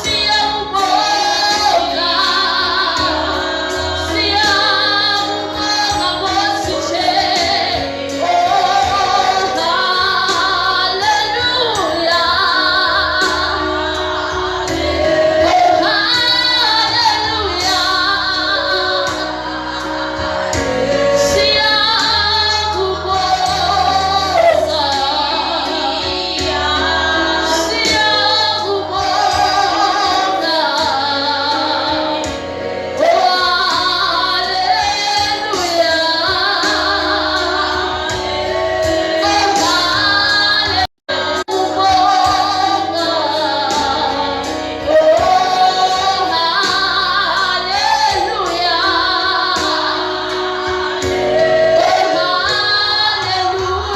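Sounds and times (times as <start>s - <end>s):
woman singing gospel: 0.0s - 53.9s.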